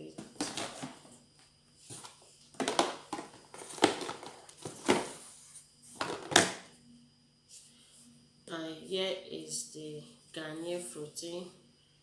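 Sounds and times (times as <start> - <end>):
plastic bottles knocking: 0.2 - 1.0, 2.5 - 5.2, 6.0 - 6.6.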